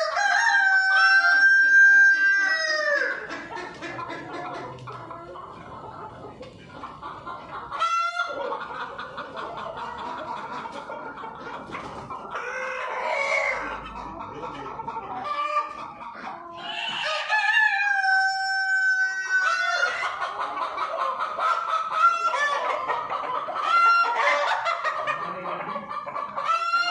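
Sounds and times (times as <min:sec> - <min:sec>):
rooster crowing: 0:00.0 - 0:03.2, 0:16.7 - 0:20.0
chicken squawks: 0:00.0 - 0:26.9
chickens clucking: 0:00.0 - 0:26.9.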